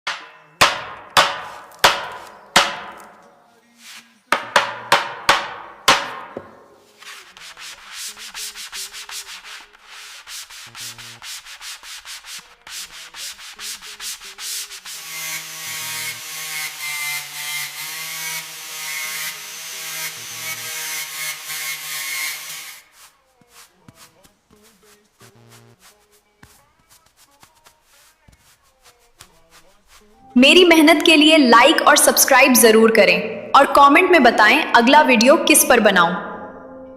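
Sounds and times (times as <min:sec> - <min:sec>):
sharp knocks on wood: 0:00.1 - 0:03.2, 0:04.4 - 0:06.6
rubbing strokes on wood: 0:03.6 - 0:04.6, 0:06.8 - 0:30.2.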